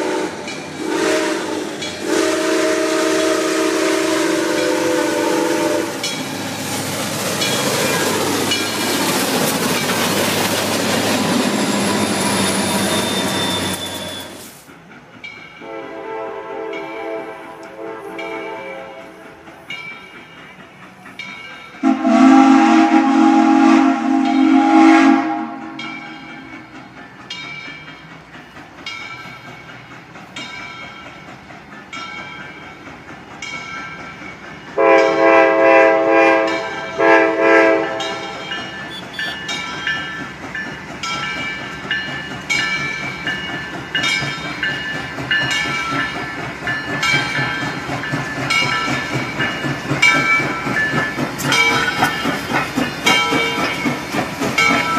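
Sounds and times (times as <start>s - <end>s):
steam locomotive whistle blasts: 0.0s - 6.1s, 11.5s - 14.6s, 15.6s - 19.4s, 21.8s - 26.5s, 34.8s - 39.6s
steam engine chuffing: 0.0s - 54.9s.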